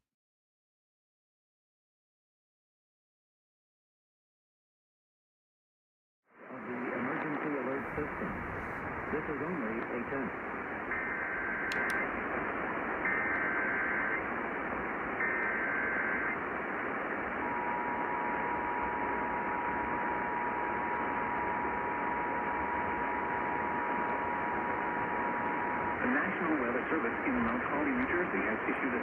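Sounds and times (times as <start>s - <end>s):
radio static: 6.4s - 29.0s.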